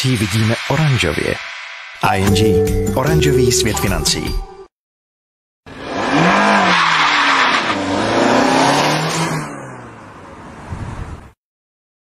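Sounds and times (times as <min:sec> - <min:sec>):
loud hiss: 0:00.0 - 0:02.2
car engine revving: 0:05.7 - 0:10.2.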